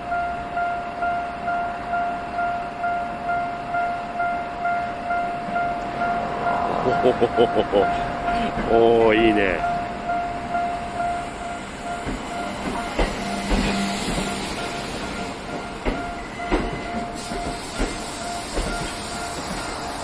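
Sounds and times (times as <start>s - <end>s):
train rumble: 0.0s - 20.0s
train wheels clacking over rails: 11.2s - 20.0s.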